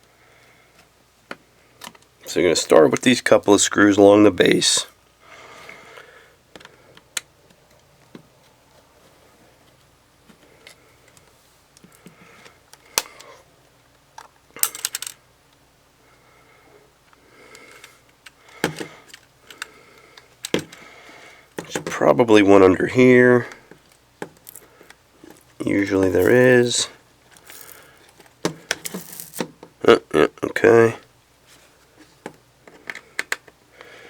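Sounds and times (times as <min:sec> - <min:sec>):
screwdriver turning small screws: 0:27.4 - 0:27.8, 0:28.8 - 0:29.4.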